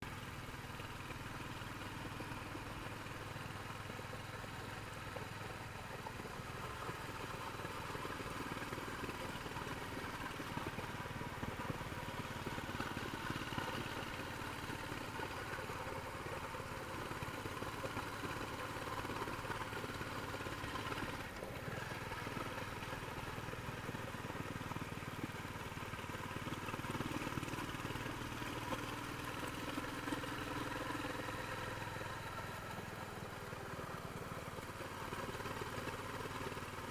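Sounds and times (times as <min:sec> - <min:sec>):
motorcycle engine running: 0:00.0 - 0:36.9.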